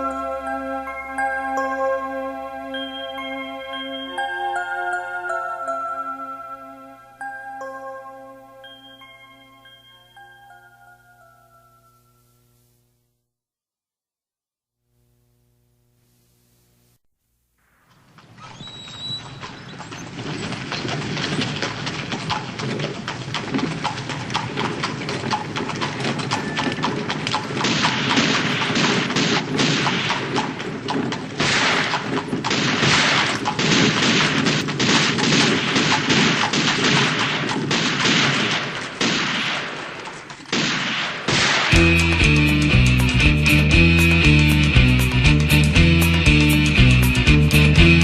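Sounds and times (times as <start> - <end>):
sharp cracks and thuds: 27.6 - 42.3
rock music with electric guitar: 41.7 - 48.0.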